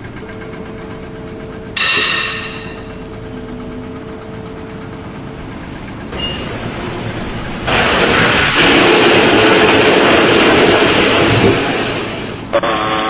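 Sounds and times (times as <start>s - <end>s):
engine running steadily: 0.0s - 13.0s
loud hiss: 6.1s - 12.5s.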